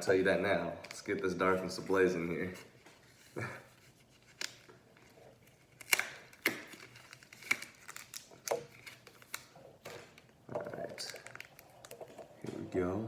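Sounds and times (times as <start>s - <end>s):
foil wrapper crinkling: 5.4s - 12.4s.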